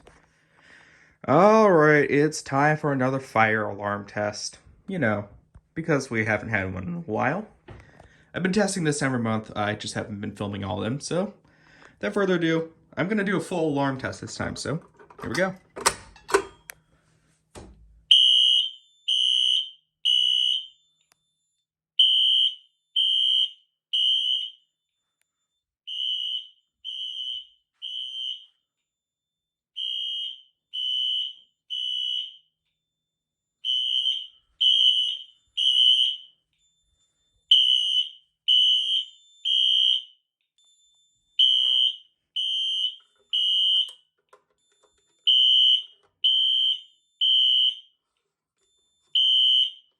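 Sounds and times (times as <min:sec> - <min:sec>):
fire alarm horns beeping: 0:18.1 - 0:20.9, 0:22.0 - 0:24.6, 0:25.9 - 0:28.6, 0:29.8 - 0:32.5, 0:33.6 - 0:48.0, 0:48.9 - 0:49.9.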